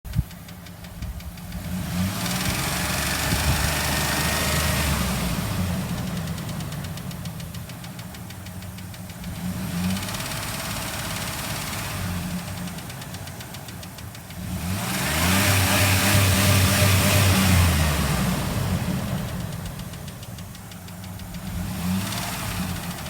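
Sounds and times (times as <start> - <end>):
fast even clicking: 0.1 - 4.1, 5.5 - 14.8, 18.6 - 23.0
car engine running and revving: 0.1 - 23.0.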